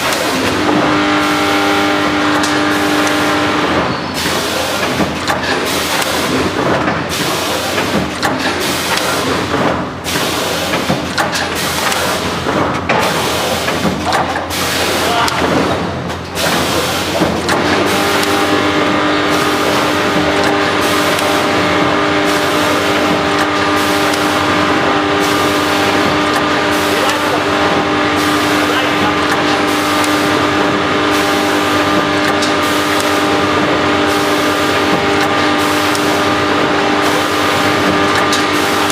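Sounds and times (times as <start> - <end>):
steady machine hum: 0.0 - 38.9
machine clattering clicks and knocks: 2.3 - 18.6, 28.7 - 30.8, 31.8 - 33.8, 34.8 - 38.9.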